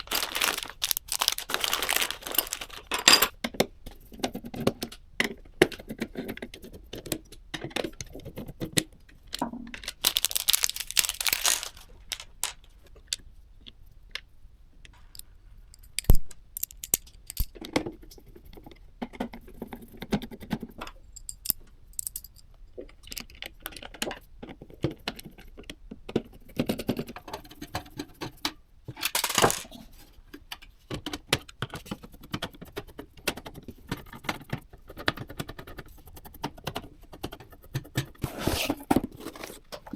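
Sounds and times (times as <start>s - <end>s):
packaging rustling: 0.0s - 3.3s, 9.9s - 12.6s.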